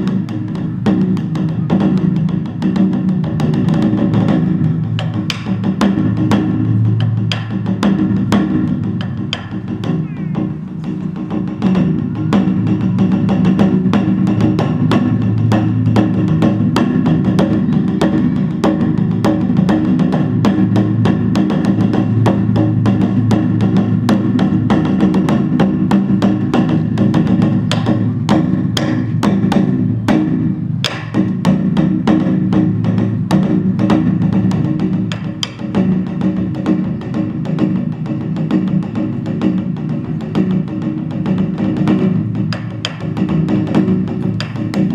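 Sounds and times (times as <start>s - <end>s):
fast drumming on barrel drum: 0.0s - 44.9s
low ringing hum: 0.0s - 44.9s
sticks striking wooden drum rim: 30.8s - 31.4s.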